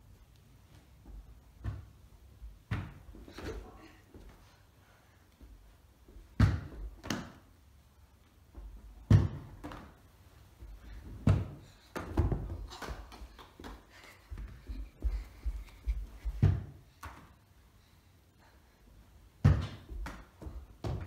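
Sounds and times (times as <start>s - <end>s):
football thudding: 6.4s - 7.4s, 9.0s - 10.0s, 19.4s - 21.0s.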